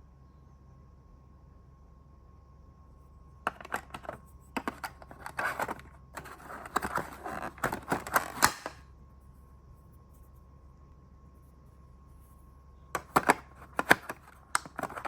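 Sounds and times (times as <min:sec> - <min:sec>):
sharp plastic clicks: 0:03.5 - 0:08.8, 0:13.0 - 0:15.0
packaging rustling: 0:13.0 - 0:15.0.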